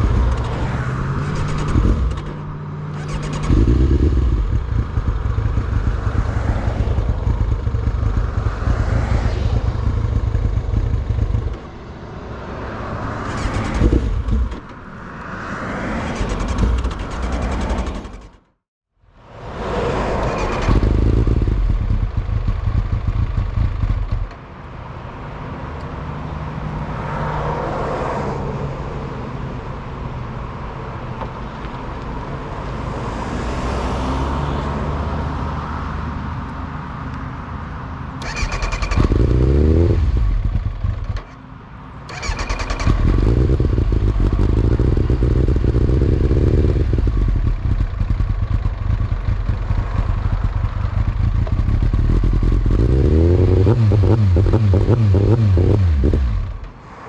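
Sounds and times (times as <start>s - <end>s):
motorcycle engine running: 0.0s - 11.7s, 20.4s - 24.3s, 42.2s - 56.6s.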